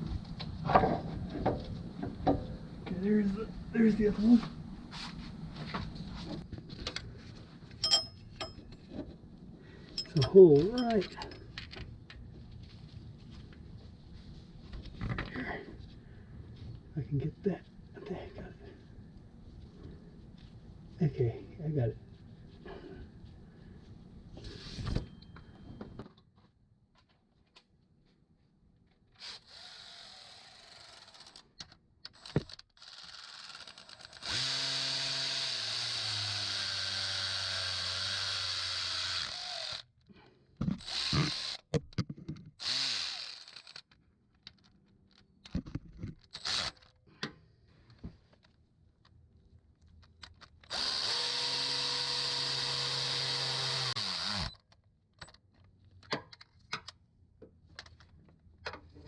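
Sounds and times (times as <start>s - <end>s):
power drill driving bolts: 32.1s - 39.8s, 40.8s - 41.6s, 46.4s - 46.9s, 50.6s - 54.6s.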